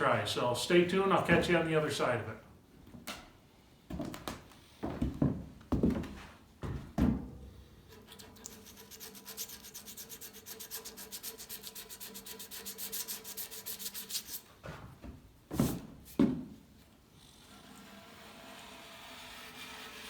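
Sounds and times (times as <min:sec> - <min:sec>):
heavy thumps: 0:01.2 - 0:01.8
rapid rubbing strokes: 0:07.9 - 0:14.5.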